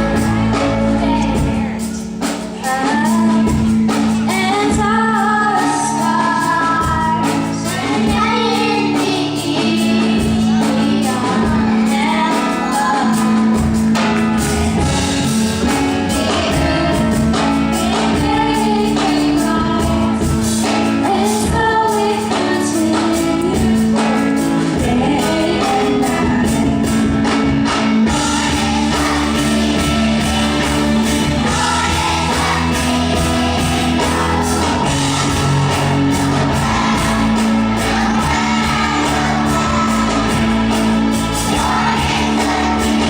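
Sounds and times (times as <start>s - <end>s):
held bass notes: 0.0s - 5.4s, 13.1s - 21.7s, 24.5s - 43.0s
person singing: 0.0s - 13.9s, 14.5s - 26.9s, 28.1s - 43.0s
instrumental accompaniment: 0.0s - 43.0s.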